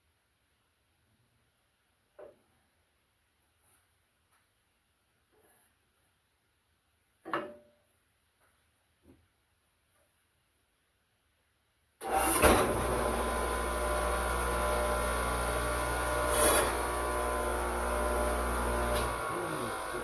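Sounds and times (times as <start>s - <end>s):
table saw running: 12.0s - 20.0s.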